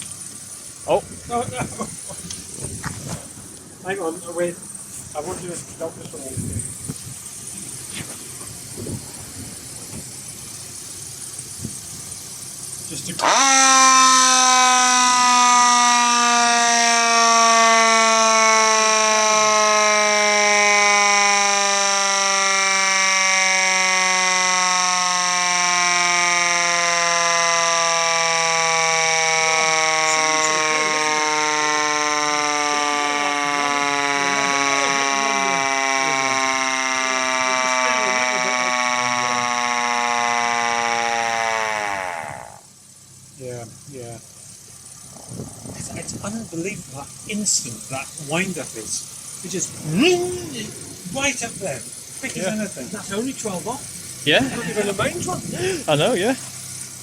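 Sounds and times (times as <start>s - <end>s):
rotor siren wailing: 12.4s - 43.2s, 44.8s - 57.0s.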